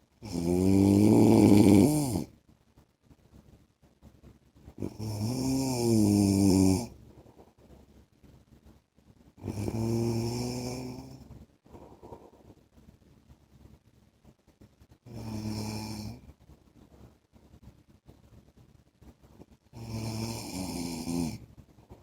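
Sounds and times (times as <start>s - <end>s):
man snoring: 0.2s - 2.3s, 4.8s - 6.9s, 9.4s - 11.2s, 15.1s - 16.2s, 19.8s - 21.4s.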